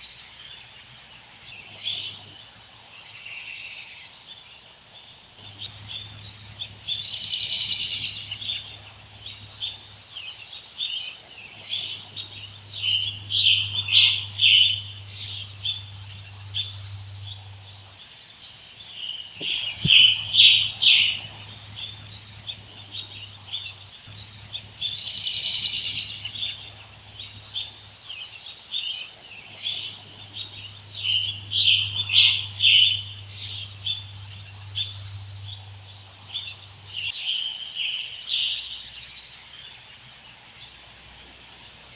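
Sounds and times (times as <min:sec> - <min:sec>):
birds singing: 0:00.0 - 0:41.9.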